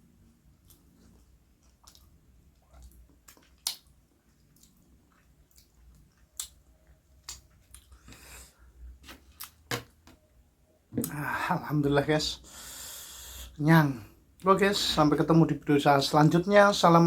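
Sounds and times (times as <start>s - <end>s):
mouth clicks and smacks: 0.6s - 8.0s
chewing: 0.6s - 8.1s.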